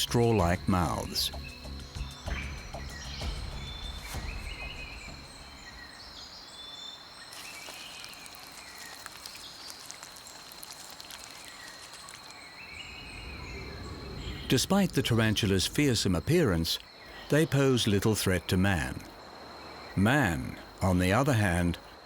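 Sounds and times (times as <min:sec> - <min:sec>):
high insect buzz: 0:03.8 - 0:14.5.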